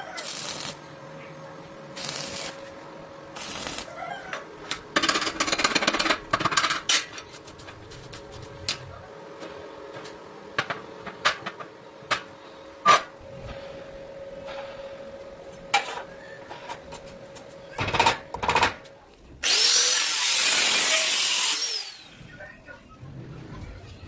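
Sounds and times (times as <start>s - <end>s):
hard objects clicking and clattering: 4.7s - 7.8s.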